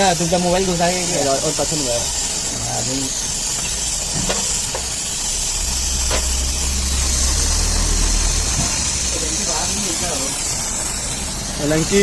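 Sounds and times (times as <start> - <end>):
high hiss of pressurized gas: 0.0 - 12.0
low hum: 5.2 - 11.5.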